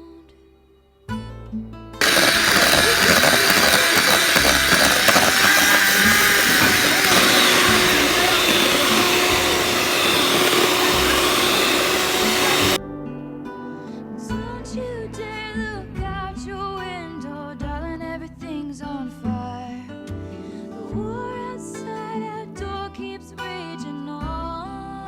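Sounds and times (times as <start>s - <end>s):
kitchen appliance motor running: 2.0s - 12.8s.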